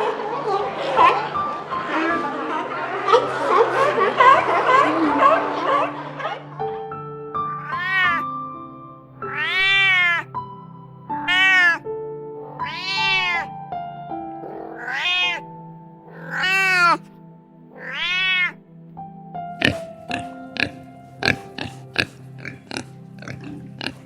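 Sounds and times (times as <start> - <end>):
soft background music: 0.0 - 24.0
cat meowing: 7.5 - 8.3, 9.2 - 10.4, 11.1 - 11.9, 12.6 - 13.5, 14.6 - 15.5, 16.1 - 17.0, 17.8 - 18.6.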